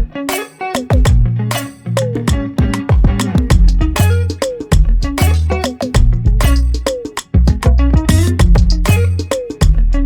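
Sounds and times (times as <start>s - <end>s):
latin style background music: 0.0s - 10.0s
bass line: 1.0s - 10.0s
tom or conga hits: 2.0s - 9.8s.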